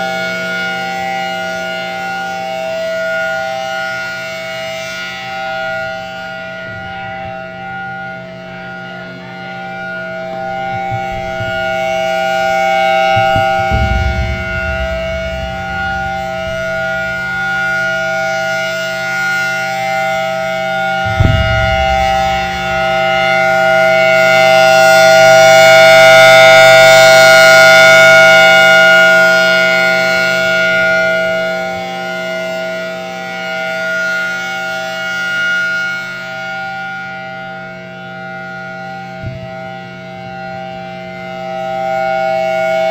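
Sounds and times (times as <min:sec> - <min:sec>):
civil defense siren chord tone: 0:00.0 - 0:42.9
short low thumps: 0:10.4 - 0:18.0, 0:21.1 - 0:23.6.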